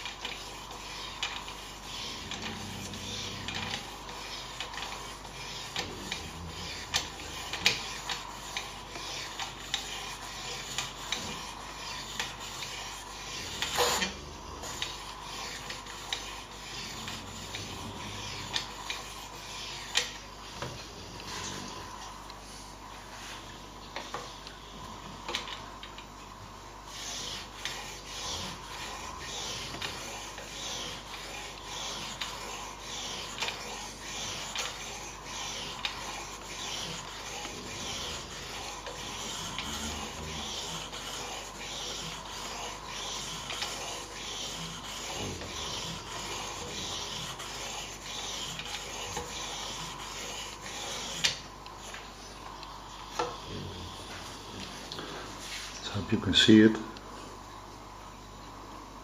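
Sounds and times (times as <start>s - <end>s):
sharpening stone rasping on knife: 26.9s - 51.4s.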